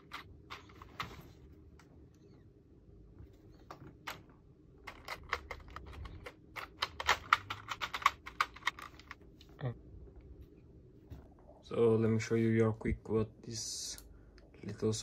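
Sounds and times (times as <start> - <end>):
mechanical keyboard keys clicking: 4.8 - 9.2.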